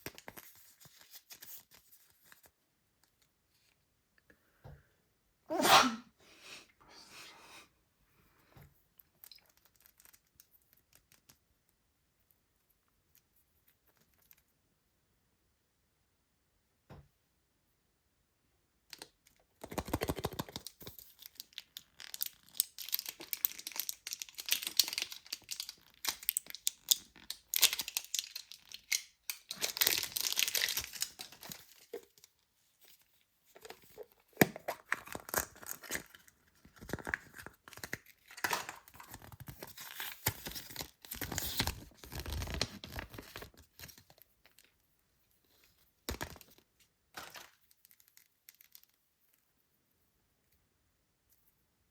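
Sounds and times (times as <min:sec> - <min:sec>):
packaging torn and crinkled: 0:09.2 - 0:11.2, 0:19.6 - 0:32.4, 0:33.9 - 0:44.7, 0:47.2 - 0:49.0.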